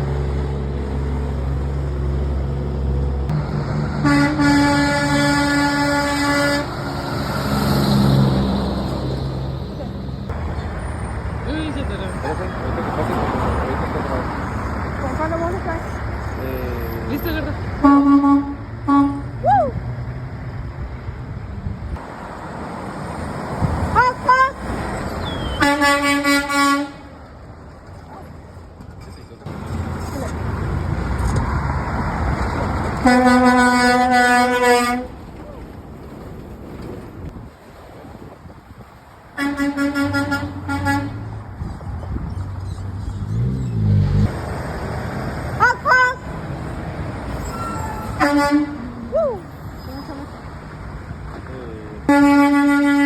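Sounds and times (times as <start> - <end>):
road traffic rumble: 0.0 - 53.0
truck air horn blast: 3.9 - 7.0, 17.8 - 19.4, 23.9 - 24.7, 25.3 - 27.2, 33.0 - 35.2, 39.4 - 41.4, 45.6 - 46.4, 47.3 - 49.0, 52.1 - 53.0.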